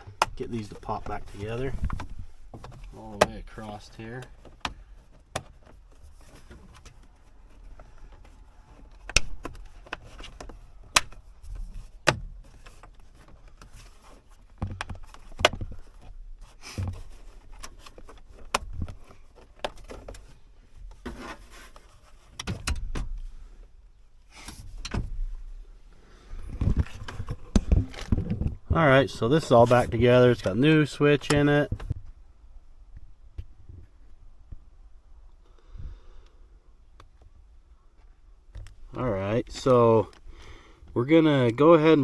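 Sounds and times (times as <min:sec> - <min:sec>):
rustling handling: 0:00.0 - 0:22.5, 0:23.2 - 0:32.2.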